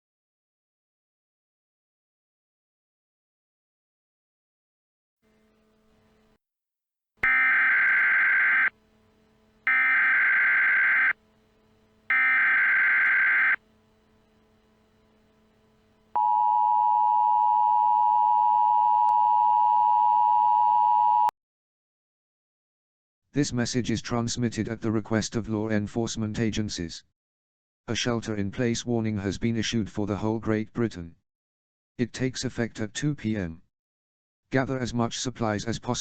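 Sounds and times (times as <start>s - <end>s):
two-tone attention signal: 7.2s - 8.7s, 9.7s - 11.2s, 12.1s - 13.6s
warbling data tones: 7.2s - 8.7s, 9.7s - 13.6s.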